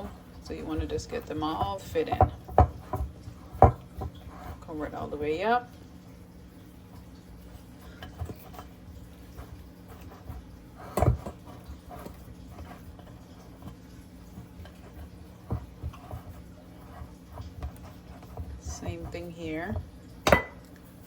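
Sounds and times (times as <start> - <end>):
hands pressing dough: 0.0 - 4.8, 9.4 - 20.6
pan knocking: 18.7 - 20.7.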